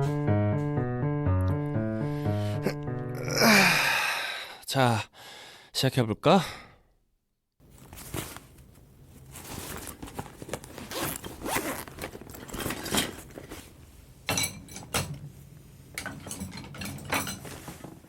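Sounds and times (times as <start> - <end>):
zipper being pulled open: 10.7 - 12.8.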